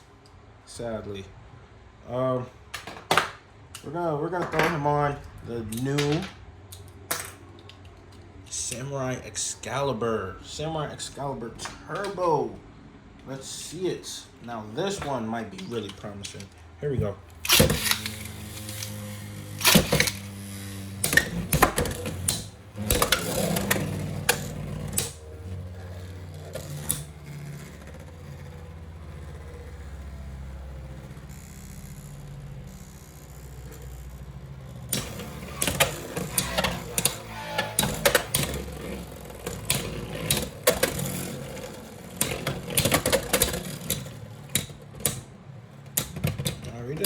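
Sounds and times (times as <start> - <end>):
spinning tops whirring: 17.3 - 45.9.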